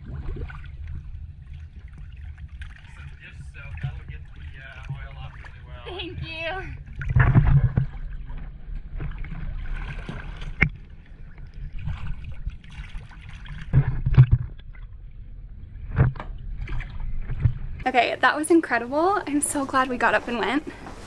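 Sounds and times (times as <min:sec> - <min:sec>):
water noise: 0:00.0 - 0:21.0.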